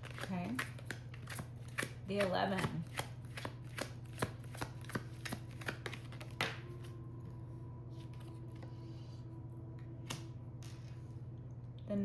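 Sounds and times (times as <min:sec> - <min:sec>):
cards clicking and snapping: 0:00.0 - 0:06.6
low steady hum: 0:00.0 - 0:12.0.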